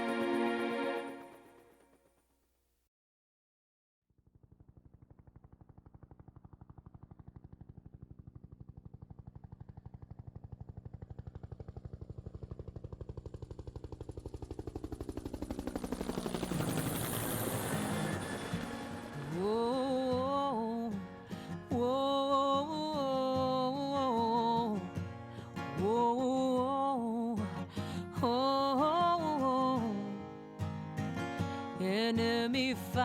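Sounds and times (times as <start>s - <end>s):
helicopter rotor blades thumping: 4.5s - 20.6s.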